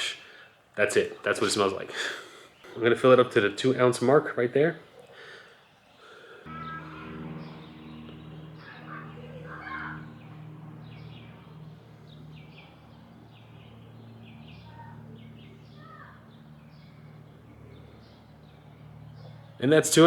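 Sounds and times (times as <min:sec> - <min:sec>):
small birds chirping: 0:00.0 - 0:20.0
steady low hum: 0:06.5 - 0:20.0.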